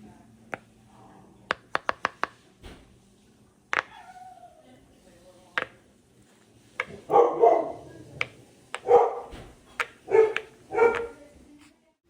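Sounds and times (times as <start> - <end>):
dog barking: 7.0 - 8.0, 8.8 - 9.4, 10.0 - 11.2.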